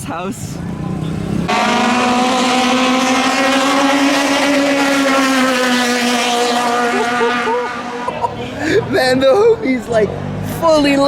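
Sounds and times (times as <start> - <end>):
boat engine running at high revs: 1.4 - 8.3.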